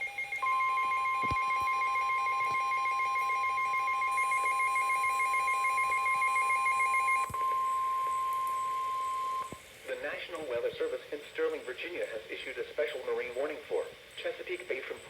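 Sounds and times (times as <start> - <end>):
steady alarm tone: 0.0 - 9.5.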